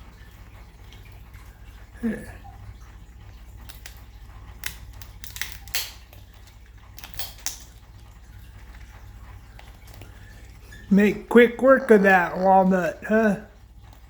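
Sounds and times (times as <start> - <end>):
bird cracking nut shells: 3.6 - 7.9.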